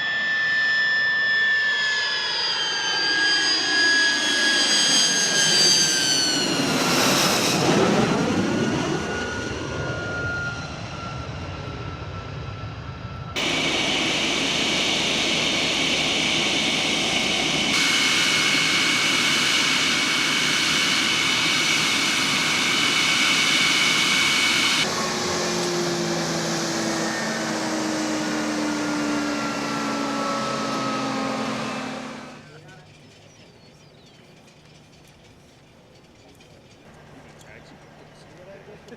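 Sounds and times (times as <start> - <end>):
high-pitched jet engine whine: 0.0 - 38.9
jet aircraft passing: 0.0 - 38.9
low steady engine tone: 24.8 - 38.9.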